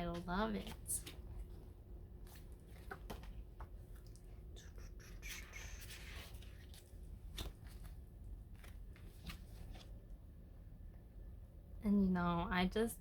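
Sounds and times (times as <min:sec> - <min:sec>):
paper pages rustling: 0:00.1 - 0:03.8, 0:05.2 - 0:10.1.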